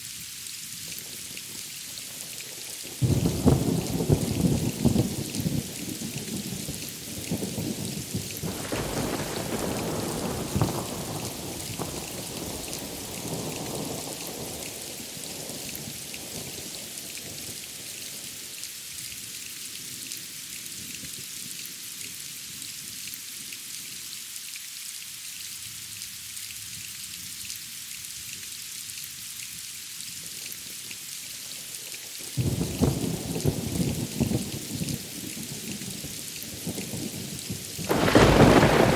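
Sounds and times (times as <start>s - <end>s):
heavy rain: 0.0s - 38.9s
rolling thunder rumble: 8.4s - 12.1s, 37.9s - 38.9s
loud thunder clap: 8.5s - 11.8s, 37.9s - 38.9s.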